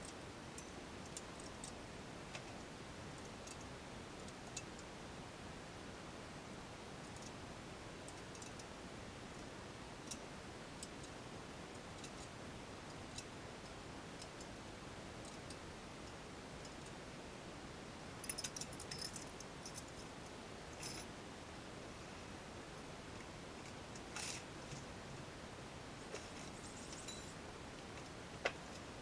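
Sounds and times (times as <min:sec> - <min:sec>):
steady hiss: 0:20.6 - 0:29.0
metallic clinking and jingling: 0:20.8 - 0:21.1, 0:26.7 - 0:27.4.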